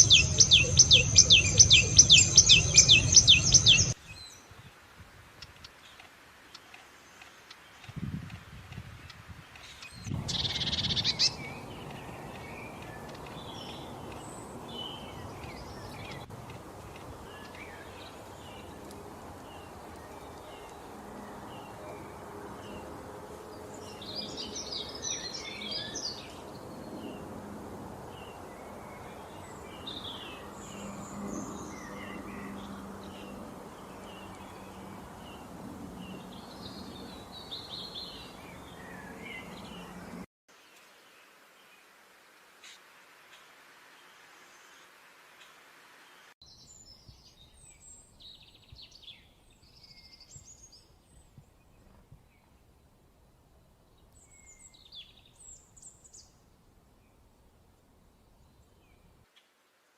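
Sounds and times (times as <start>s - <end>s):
birds chirping and singing: 0.0s - 4.4s, 9.6s - 16.3s.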